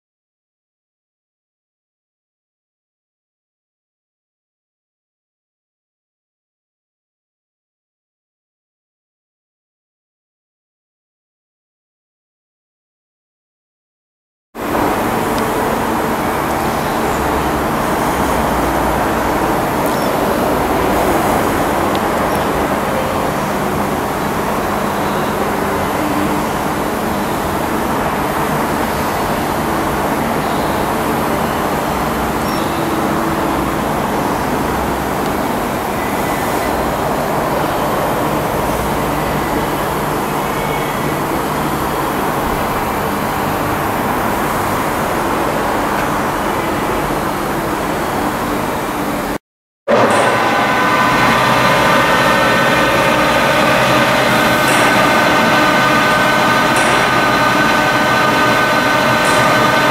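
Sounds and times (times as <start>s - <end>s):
lathe running with mechanical hum: 14.6s - 59.9s.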